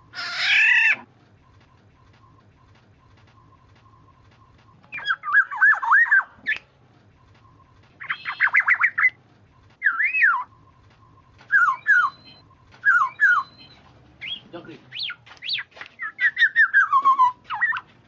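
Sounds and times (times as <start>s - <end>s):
oriole fluty whistled phrases: 11.5s - 17.8s.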